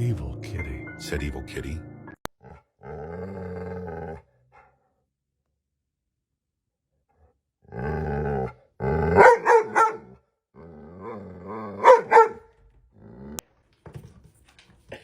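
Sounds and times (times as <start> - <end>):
dog growling: 2.4 - 4.7, 7.6 - 13.4
dog barking: 9.1 - 10.2, 11.7 - 12.5.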